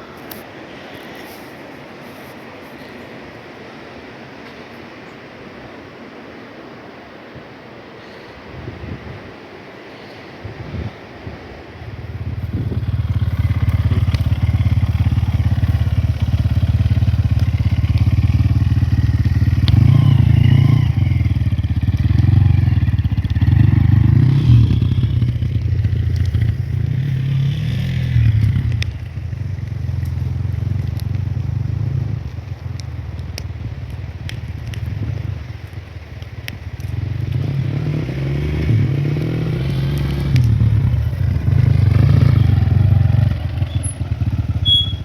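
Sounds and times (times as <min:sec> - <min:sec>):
vehicle engine running: 0:12.1 - 0:36.0, 0:38.7 - 0:45.0.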